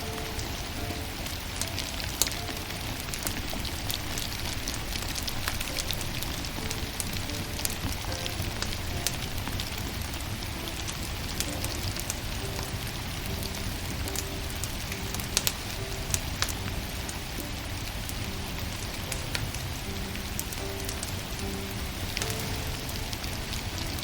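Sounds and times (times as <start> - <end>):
steady rain-like hiss: 0.0 - 24.0
wood fire crackling and popping: 0.0 - 24.0.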